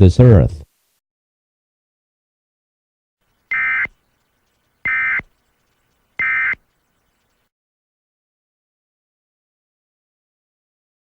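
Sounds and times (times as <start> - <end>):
digital data tone bursts: 3.5 - 7.5.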